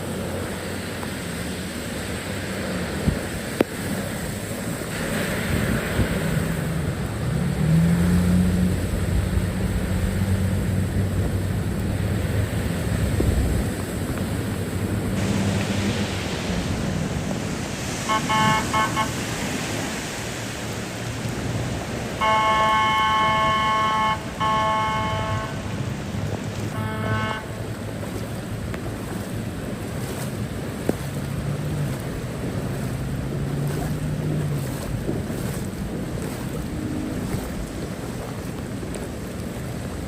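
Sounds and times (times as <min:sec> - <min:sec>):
steady rushing noise: 0:00.0 - 0:40.0
car horn honking: 0:18.0 - 0:19.5, 0:22.1 - 0:26.0, 0:26.6 - 0:28.0.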